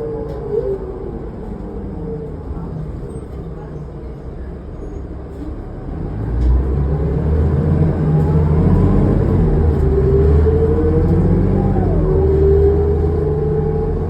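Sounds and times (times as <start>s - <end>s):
bus engine rumble: 0.0s - 14.0s
whine rising in pitch: 8.2s - 14.0s.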